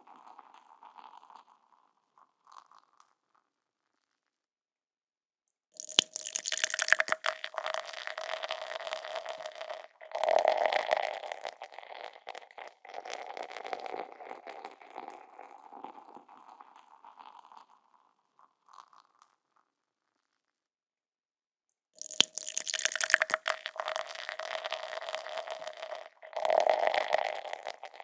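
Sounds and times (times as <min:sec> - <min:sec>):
beer pouring into a glass: 0:00.0 - 0:01.8, 0:05.8 - 0:19.0, 0:22.0 - 0:28.0
foam fizzing and crackling: 0:05.8 - 0:17.9, 0:22.0 - 0:28.0.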